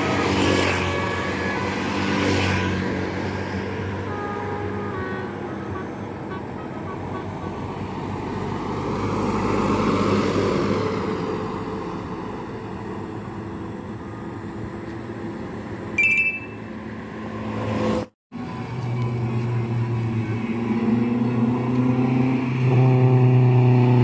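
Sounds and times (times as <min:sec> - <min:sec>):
bus engine running: 0:00.0 - 0:16.0, 0:18.4 - 0:24.0
traffic noise: 0:00.0 - 0:24.0
high-pitched beep: 0:16.0 - 0:16.6.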